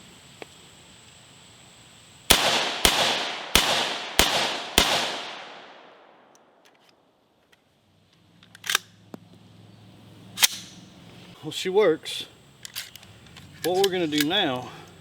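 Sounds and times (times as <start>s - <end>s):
rifle shots with echo: 2.3s - 6.6s.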